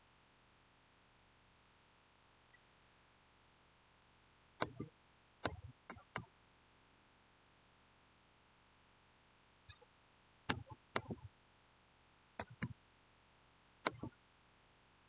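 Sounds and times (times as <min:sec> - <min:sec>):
computer mouse clicking: 0:04.6 - 0:06.3, 0:10.5 - 0:11.3, 0:12.4 - 0:12.8, 0:13.8 - 0:14.2.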